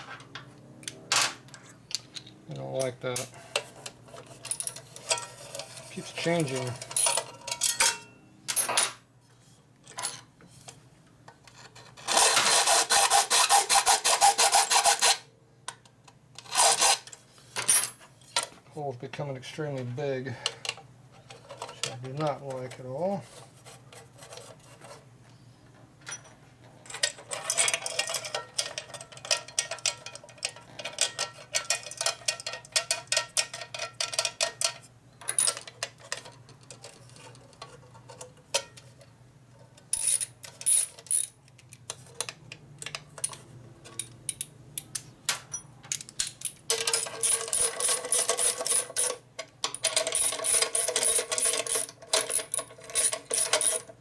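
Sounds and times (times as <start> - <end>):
metal file scraping: 11.6 - 15.2.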